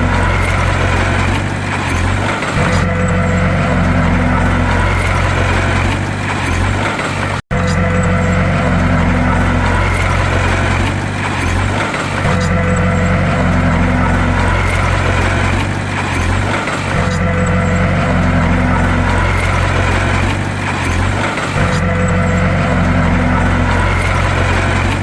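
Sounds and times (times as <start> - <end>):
bulldozer diesel engine under load: 0.0 - 25.0.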